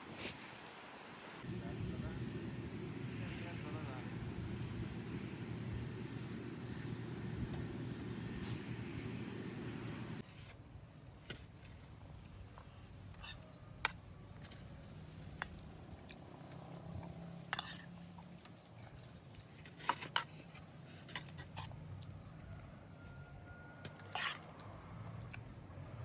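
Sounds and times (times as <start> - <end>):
steady rumbling noise: 1.4 - 10.2.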